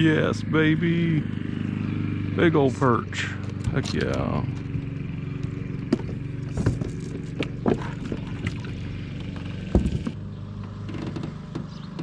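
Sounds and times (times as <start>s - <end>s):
low motor hum: 0.0s - 12.0s
knocks and clunks in boat: 5.9s - 12.0s.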